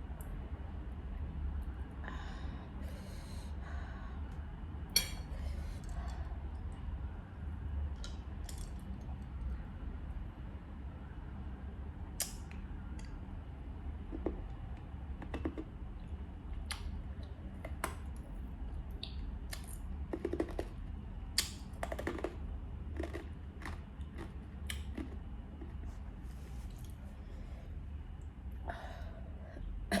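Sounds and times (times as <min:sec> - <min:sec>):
steady low hum: 0:00.0 - 0:30.0
eating crunches and clicks: 0:19.0 - 0:25.8.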